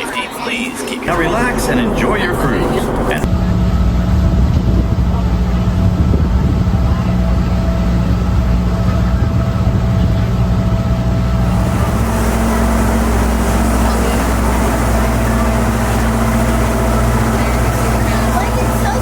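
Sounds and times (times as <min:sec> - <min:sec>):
boat engine running: 0:00.0 - 0:19.0
rushing water noise: 0:11.4 - 0:19.0.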